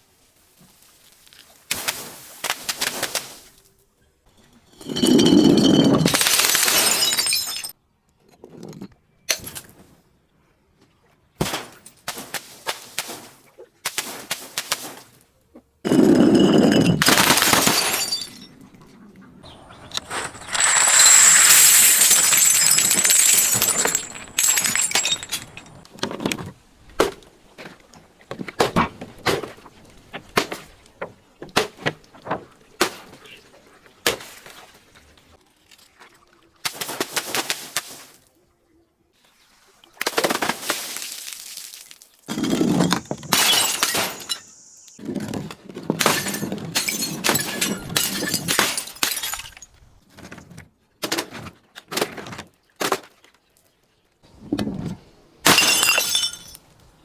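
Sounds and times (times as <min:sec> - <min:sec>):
glass crunching: 0:04.7 - 0:07.8, 0:15.9 - 0:18.6, 0:19.9 - 0:25.9, 0:41.1 - 0:45.0, 0:46.1 - 0:49.7, 0:55.5 - 0:56.6
glass smashing: 0:04.7 - 0:07.8, 0:15.9 - 0:18.6, 0:20.0 - 0:25.8, 0:42.3 - 0:45.0, 0:46.0 - 0:49.7, 0:55.5 - 0:56.6.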